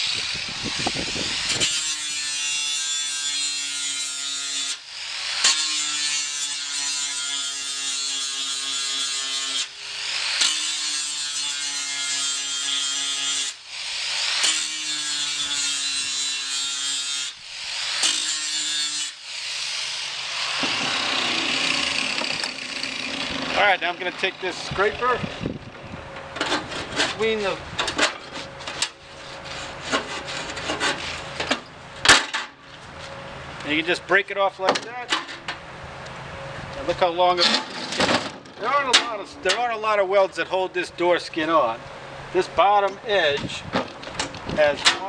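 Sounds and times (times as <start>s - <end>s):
electric grinder grinding steel: 0.0s - 25.7s.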